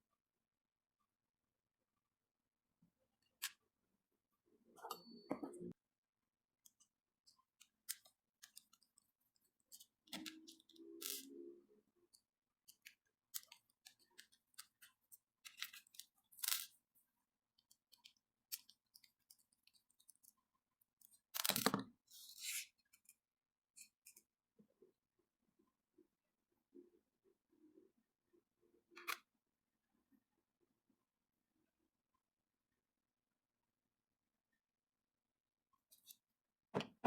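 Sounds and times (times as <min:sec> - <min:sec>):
knock: 0:36.7 - 0:37.0.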